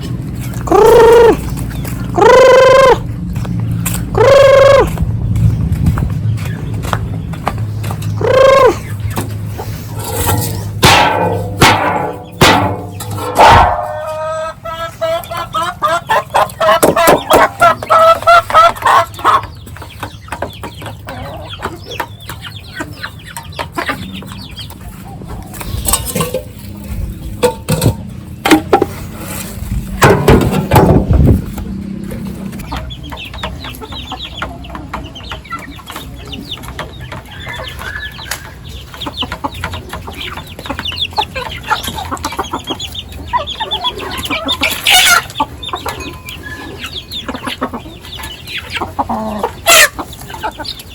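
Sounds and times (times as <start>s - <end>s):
chickens clucking: 0.0s - 50.9s
sharp knocks: 10.4s - 13.9s, 30.0s - 31.4s.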